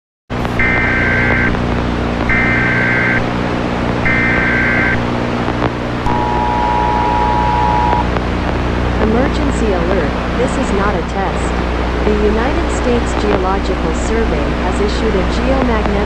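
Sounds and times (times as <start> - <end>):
steady low hum: 0.3 - 16.0
two-tone attention signal: 0.6 - 1.5, 2.3 - 3.2, 4.1 - 5.0, 6.0 - 8.1
shrill digital data bursts: 4.1 - 5.0, 6.1 - 8.1.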